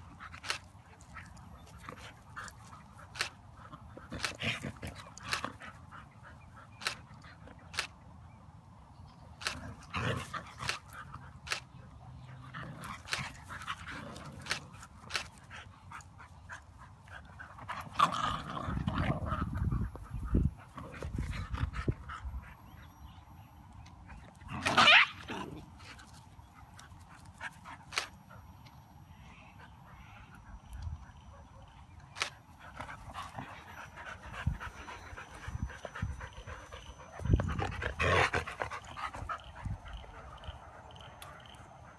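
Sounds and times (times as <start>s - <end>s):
loud high dog cry: 24.6s - 25.3s.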